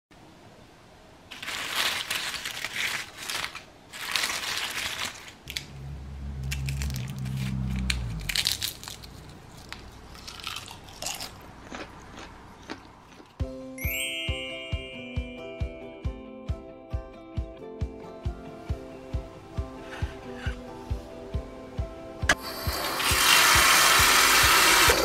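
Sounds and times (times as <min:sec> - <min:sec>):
crunching and crumpling: 0:01.3 - 0:05.7, 0:06.5 - 0:13.4
low steady hum: 0:05.4 - 0:13.4.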